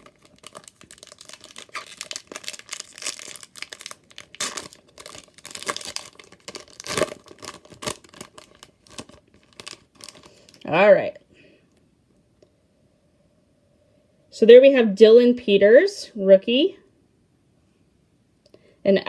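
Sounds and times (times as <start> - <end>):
card pack wrapper tearing and crinkling: 0.0 - 10.6.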